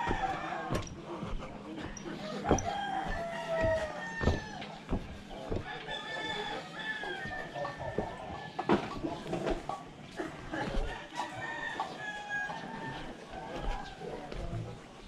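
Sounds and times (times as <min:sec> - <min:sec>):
roosters crowing: 0:00.0 - 0:09.6, 0:10.4 - 0:14.6.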